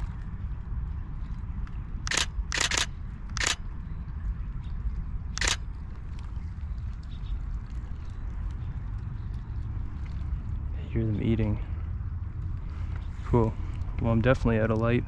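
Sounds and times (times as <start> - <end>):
camera shutter firing: 2.0 - 3.6, 5.4 - 5.6.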